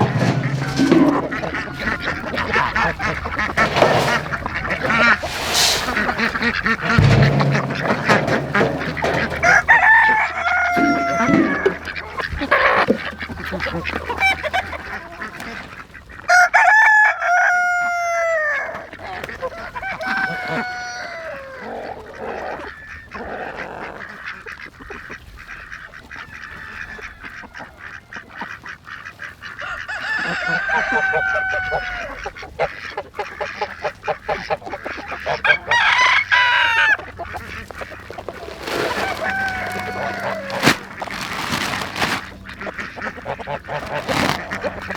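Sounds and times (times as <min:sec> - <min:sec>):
low steady hum: 0:00.0 - 0:15.1
ducks and chickens calling: 0:00.0 - 0:44.9.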